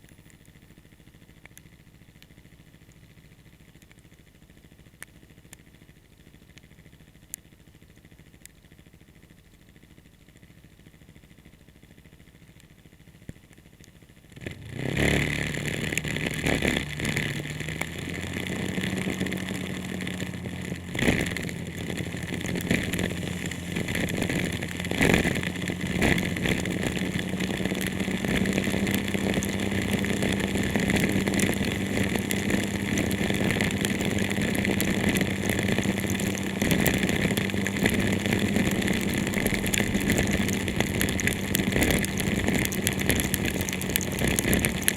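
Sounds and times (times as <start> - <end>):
vehicle engine starting and running: 14.3 - 44.9
steady hiss: 18.7 - 27.4.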